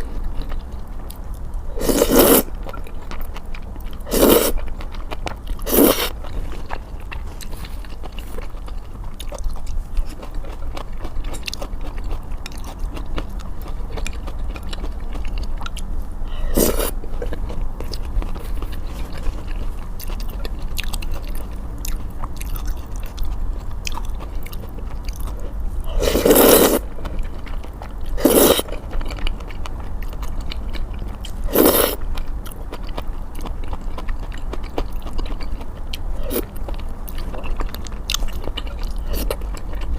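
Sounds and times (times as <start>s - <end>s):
wet chewing: 0.0s - 39.9s.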